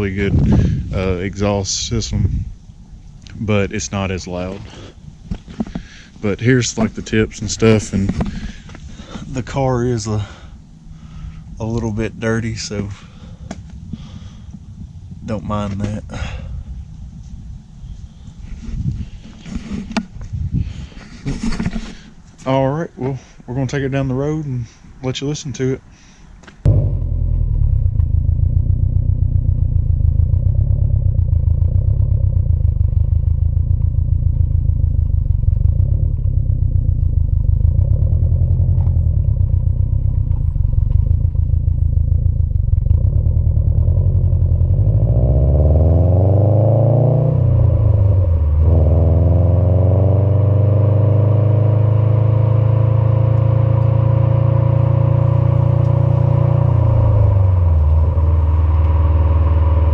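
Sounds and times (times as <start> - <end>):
car engine revving: 26.7 - 59.9.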